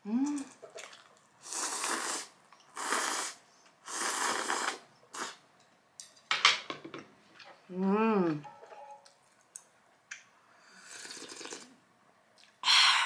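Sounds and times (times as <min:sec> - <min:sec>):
slurping noodles: 0:00.8 - 0:05.4, 0:10.8 - 0:11.7.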